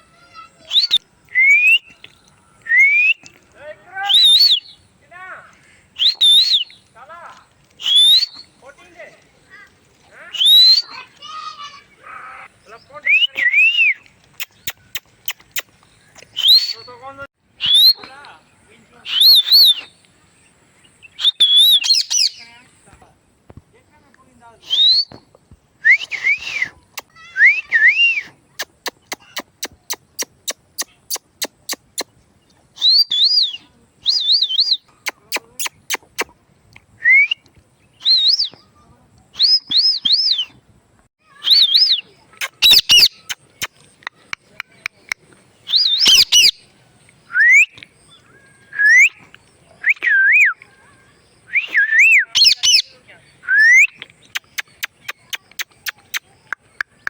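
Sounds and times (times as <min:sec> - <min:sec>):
parrot whistling: 0:07.8 - 0:08.4, 0:41.4 - 0:43.4, 0:45.7 - 0:46.6, 0:51.5 - 0:52.8.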